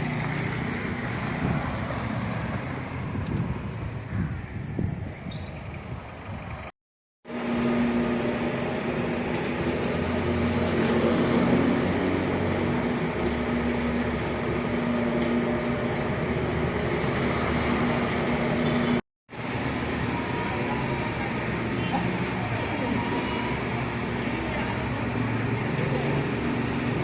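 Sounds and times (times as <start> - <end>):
machinery engine running: 7.3 - 27.0.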